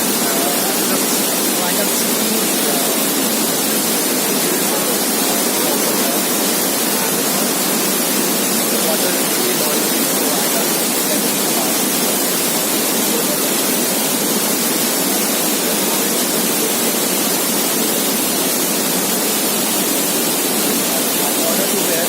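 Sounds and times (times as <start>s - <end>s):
waterfall roaring: 0.0s - 22.0s.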